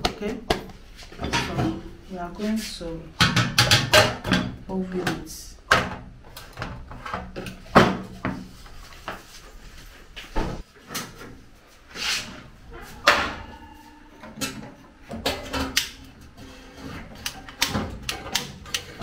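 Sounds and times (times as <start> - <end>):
kitchen items knocking: 3.2 - 6.0.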